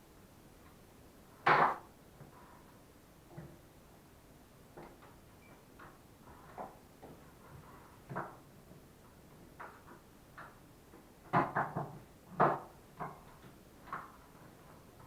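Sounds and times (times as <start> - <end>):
wooden workpieces knocking: 11.3 - 14.2.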